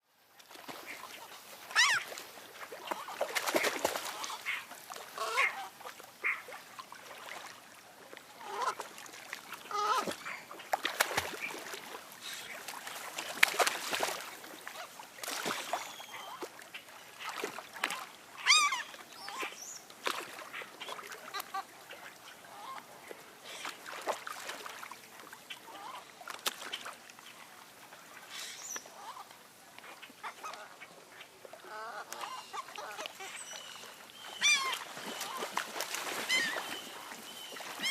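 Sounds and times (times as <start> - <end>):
geese and ducks honking and quacking: 2.8 - 6.5, 8.4 - 8.8, 9.7 - 10.7, 30.2 - 33.4.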